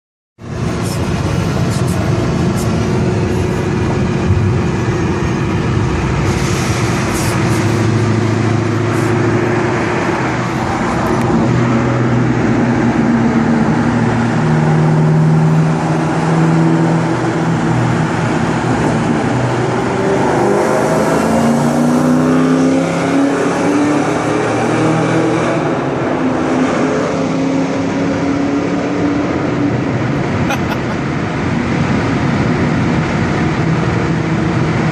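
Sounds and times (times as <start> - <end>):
car engine accelerating in tunnel: 0.4 - 34.9.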